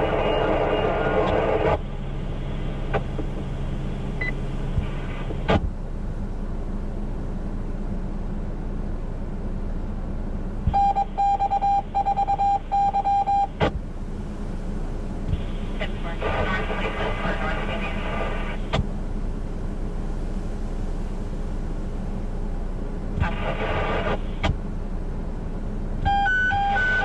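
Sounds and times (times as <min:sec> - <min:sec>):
radio scanner hiss: 0:15.3 - 0:18.8, 0:23.2 - 0:24.5
rapid high beeps over radio: 0:26.1 - 0:27.0.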